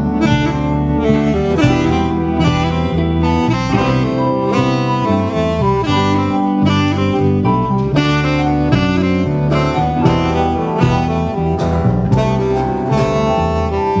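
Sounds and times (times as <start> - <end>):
live band playing instrumental: 0.0 - 14.0
sharp drum hits: 8.8 - 13.4.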